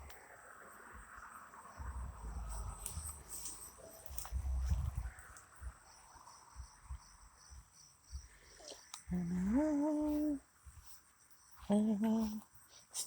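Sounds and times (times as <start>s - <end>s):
insects chirring: 0.0s - 13.0s
person humming rising pitch: 9.1s - 10.4s, 11.7s - 12.4s.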